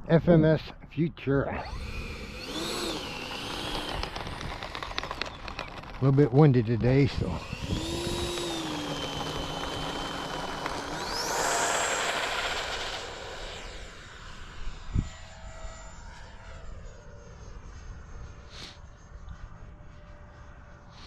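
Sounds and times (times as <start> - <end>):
electric ducted-fan jet whining: 1.5 - 21.0
wind noise: 1.6 - 15.8.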